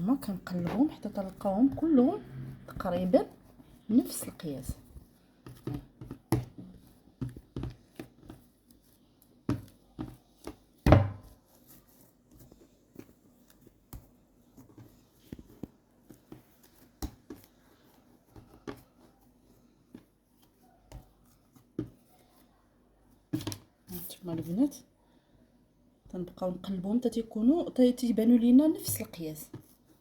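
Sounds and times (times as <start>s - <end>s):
hands shaping dough tapping: 0.0s - 22.5s.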